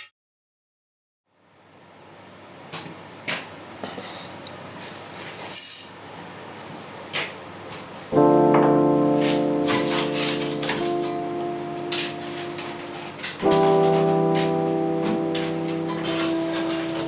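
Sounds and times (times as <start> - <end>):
metallic clink: 5.4 - 6.0
sustained keyboard chord: 8.1 - 17.0.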